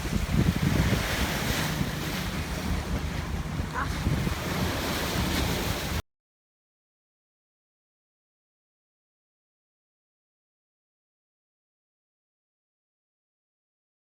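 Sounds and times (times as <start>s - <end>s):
wind buffeting microphone: 0.0s - 6.0s.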